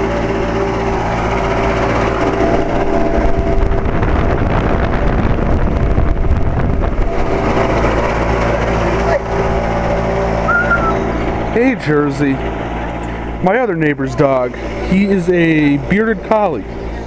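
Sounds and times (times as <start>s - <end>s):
rough rapid fluttering noise: 0.0s - 13.4s
air conditioner electrical hum: 0.0s - 17.0s.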